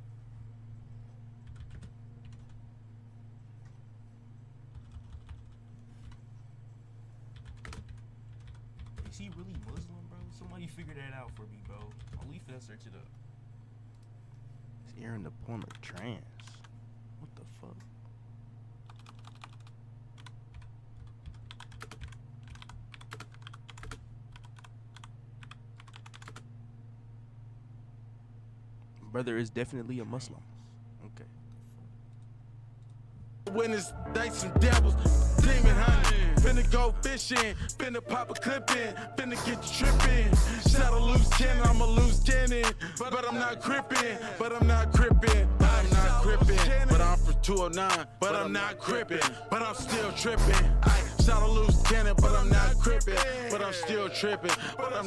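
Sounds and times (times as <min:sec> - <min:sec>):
low electrical hum: 0:00.0 - 0:55.0
keyboard typing: 0:00.9 - 0:02.7, 0:04.6 - 0:06.4, 0:07.3 - 0:12.6, 0:15.5 - 0:16.8, 0:18.8 - 0:26.5.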